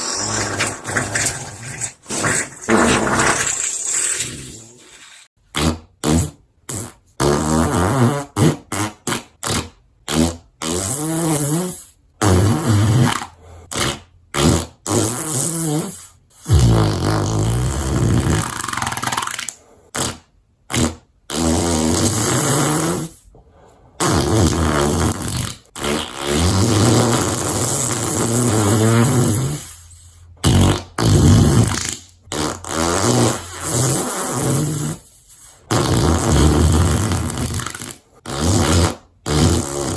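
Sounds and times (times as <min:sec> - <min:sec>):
farts: 0:00.0 - 0:23.3, 0:24.0 - 0:39.9.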